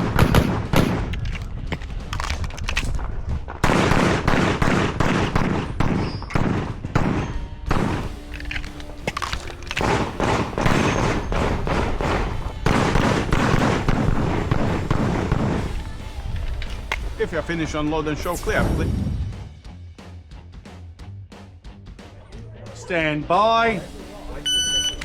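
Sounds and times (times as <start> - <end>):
rapid handgun fire: 0.0 - 1.1, 3.6 - 8.2, 9.7 - 15.8.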